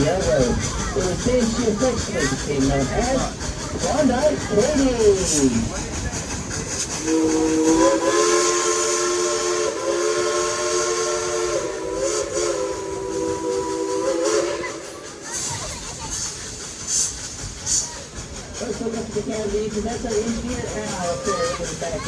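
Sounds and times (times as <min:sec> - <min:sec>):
faint steam hiss: 0:00.0 - 0:22.0
steam locomotive chime whistle: 0:07.1 - 0:14.7.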